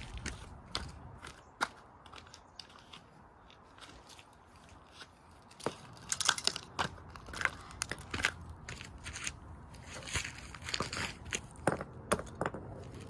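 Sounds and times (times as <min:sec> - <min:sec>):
plastic cracking and crunching: 0:05.5 - 0:08.3.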